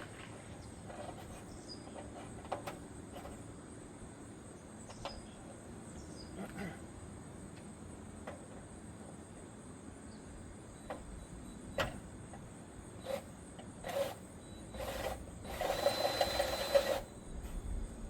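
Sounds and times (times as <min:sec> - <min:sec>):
cordless drill whining: 0:13.8 - 0:17.1.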